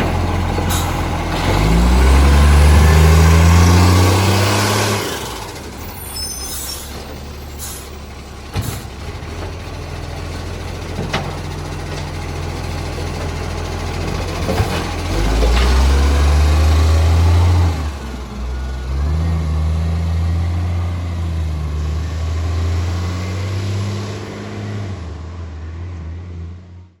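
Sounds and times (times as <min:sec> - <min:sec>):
garbage truck diesel engine running: 0:00.0 - 0:23.1.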